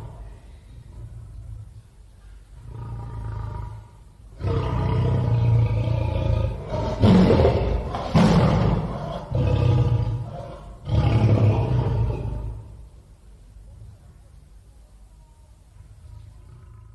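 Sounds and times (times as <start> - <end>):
tiger growling and roaring: 0.0 - 1.8, 2.6 - 12.8.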